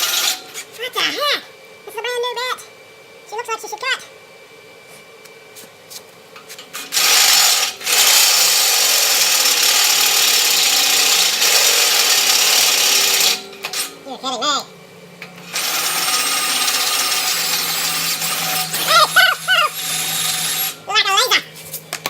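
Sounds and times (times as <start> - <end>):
electric drill cutting steel: 0.0 - 0.7, 6.7 - 14.0, 15.4 - 20.9.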